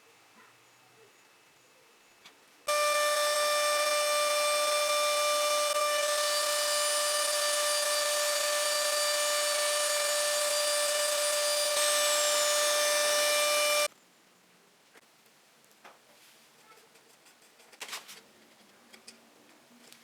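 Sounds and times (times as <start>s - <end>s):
power tool high whine: 2.7s - 13.9s.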